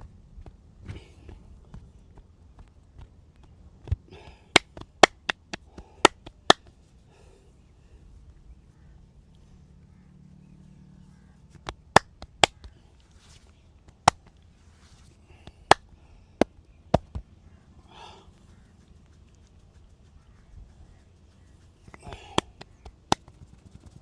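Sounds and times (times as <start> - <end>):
hands smacking skin: 4.6 - 6.6, 11.7 - 12.5, 22.4 - 23.2.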